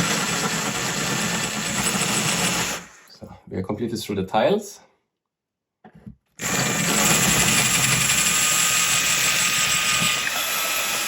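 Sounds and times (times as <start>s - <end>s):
electric drill boring into plasterboard: 0.0s - 3.1s, 6.4s - 11.0s.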